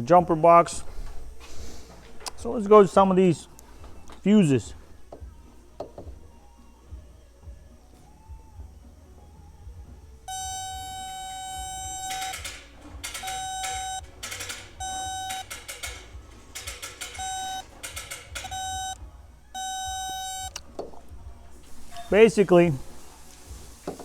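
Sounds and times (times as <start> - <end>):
circuit tester beeping: 10.3 - 20.7.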